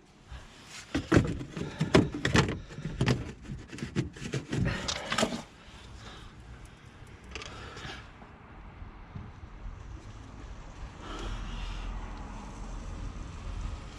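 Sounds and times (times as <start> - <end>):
knocks and rattles of parts refitted: 0.8 - 5.5.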